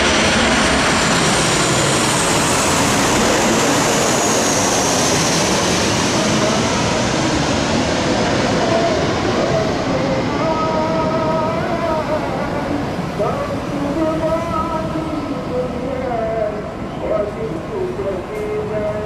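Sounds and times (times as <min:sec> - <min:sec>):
plane engines roaring: 0:00.0 - 0:19.0.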